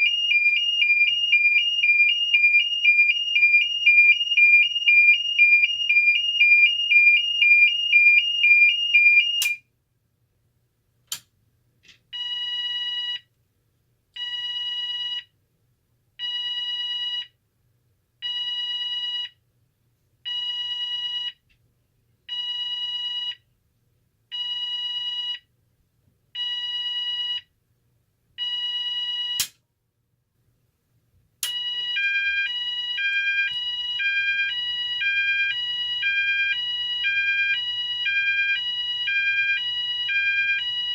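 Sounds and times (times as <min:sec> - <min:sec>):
fire alarm two-pitch warble: 0:00.0 - 0:09.6, 0:31.4 - 0:40.9
pulsed alarm tone: 0:00.0 - 0:09.6, 0:31.4 - 0:40.9.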